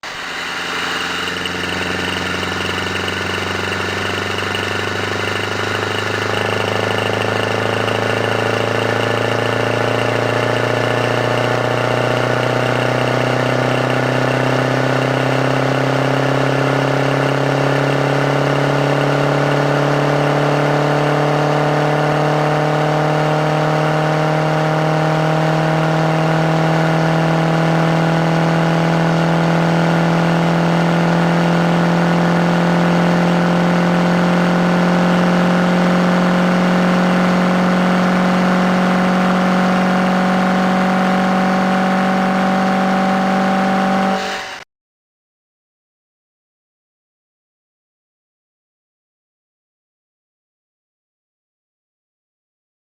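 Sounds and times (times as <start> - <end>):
engine running with rising pitch: 0.0 - 44.7.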